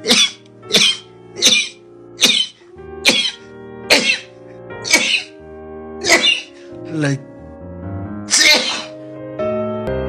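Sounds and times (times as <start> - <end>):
person sneezing: 0.0 - 5.4, 6.0 - 6.7, 8.3 - 9.0
background music: 0.0 - 10.0.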